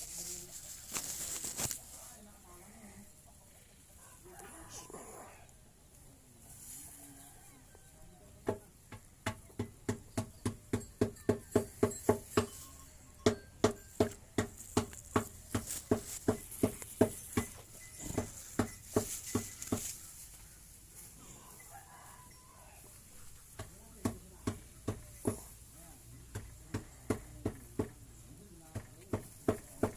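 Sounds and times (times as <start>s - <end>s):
quick regular ringing clinks: 17.1s - 20.2s.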